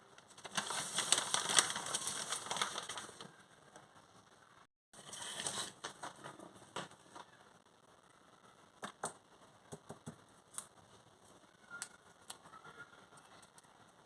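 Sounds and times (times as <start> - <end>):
packaging rustle: 0.2 - 3.4.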